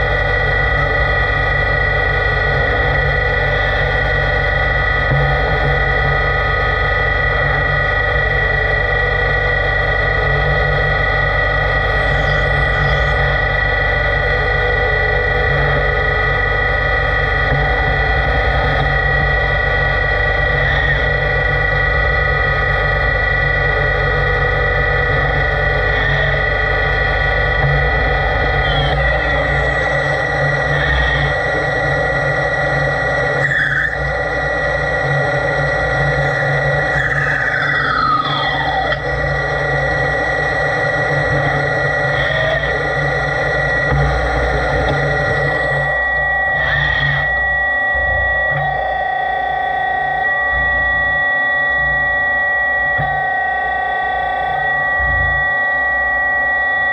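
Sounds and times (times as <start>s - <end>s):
machine whine: 0.0s - 56.9s
lathe running: 36.1s - 39.7s.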